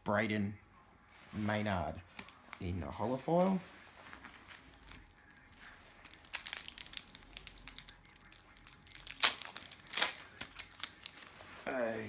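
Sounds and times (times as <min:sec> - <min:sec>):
card pack wrapper crinkling: 0:04.2 - 0:12.0.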